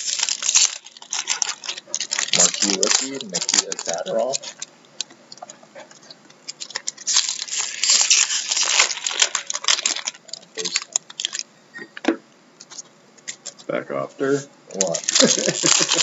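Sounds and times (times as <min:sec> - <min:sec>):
card packaging crinkling: 0:00.0 - 0:11.5, 0:14.7 - 0:16.0.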